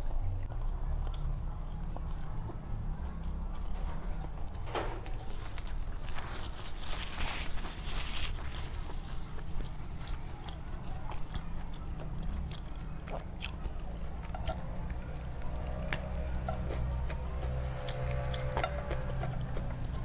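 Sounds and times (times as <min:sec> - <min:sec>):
high-pitched whine: 0:00.0 - 0:00.6
chewing: 0:00.0 - 0:20.0.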